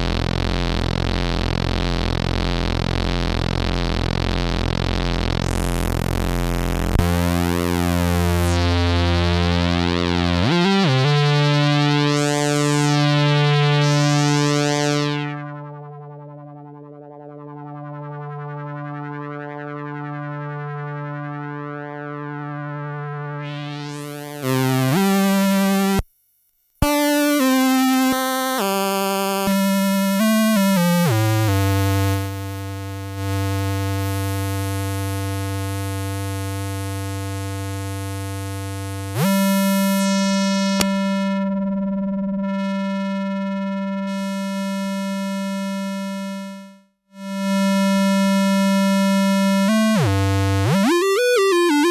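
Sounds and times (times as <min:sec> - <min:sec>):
analog synthesizer notes: 0:00.0 - 0:26.0, 0:26.8 - 0:51.9.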